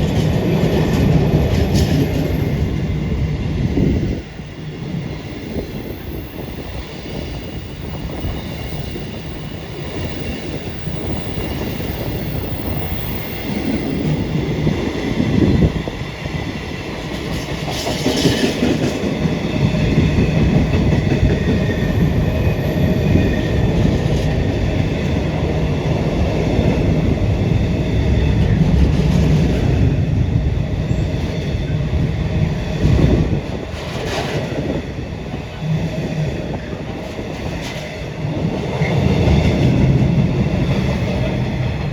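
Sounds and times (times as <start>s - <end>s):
squealing train wheels: 0.0s - 41.9s
train rumbling: 0.0s - 41.9s.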